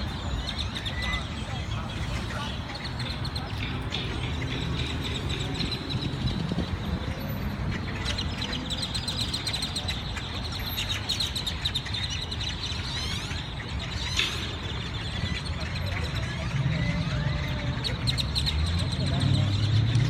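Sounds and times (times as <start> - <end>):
flock of birds chirping: 0.0 - 20.0.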